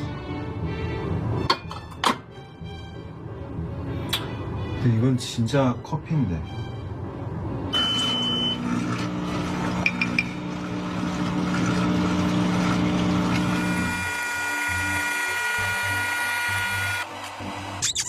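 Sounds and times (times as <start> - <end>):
coffee machine humming: 7.8 - 17.8.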